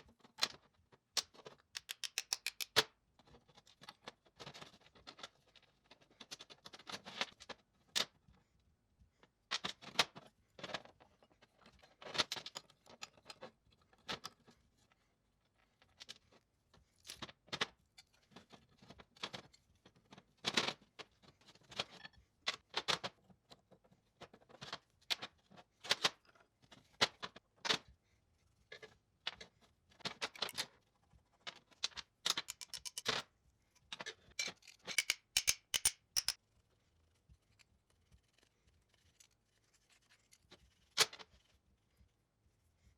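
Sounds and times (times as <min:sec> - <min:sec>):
hand tools clicking on metal: 0:01.8 - 0:02.8, 0:32.5 - 0:33.2, 0:35.0 - 0:36.4.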